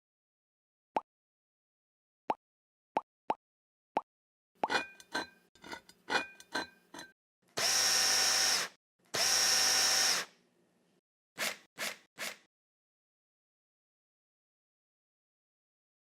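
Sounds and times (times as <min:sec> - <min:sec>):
power drill running: 0:07.6 - 0:10.3.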